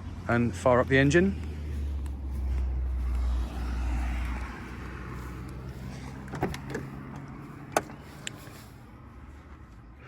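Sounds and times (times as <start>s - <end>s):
car door latch clicks: 6.3s - 6.8s.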